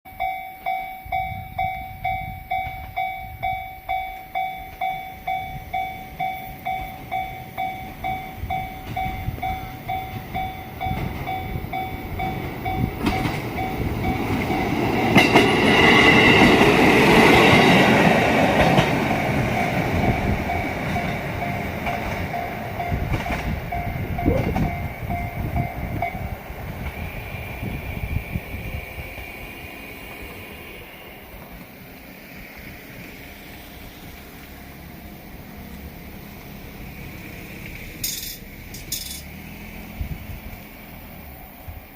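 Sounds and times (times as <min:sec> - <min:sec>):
level-crossing warning bell: 0:00.1 - 0:29.7, 0:33.2 - 0:37.3, 0:37.9 - 0:39.3
diesel railcar passing: 0:00.1 - 0:41.9
sharp wheel clicks: 0:38.0 - 0:39.3.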